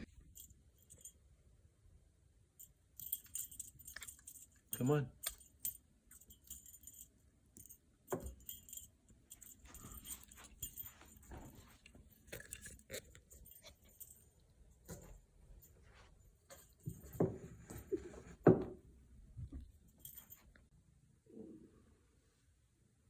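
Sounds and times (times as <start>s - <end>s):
dog collar tags jingling: 2.6s - 17.2s
light knocks and rustles: 9.4s - 12.4s, 14.8s - 20.6s.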